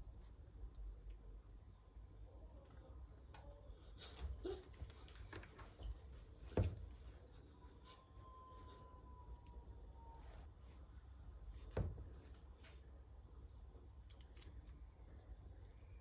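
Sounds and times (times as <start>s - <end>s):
faint steady tone: 7.1s - 11.5s.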